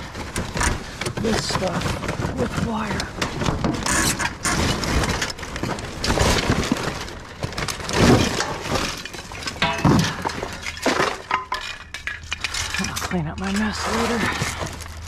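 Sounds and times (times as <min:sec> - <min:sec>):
scrap metal clattering: 0:00.0 - 0:15.0
glass clinking and breaking: 0:04.3 - 0:15.0.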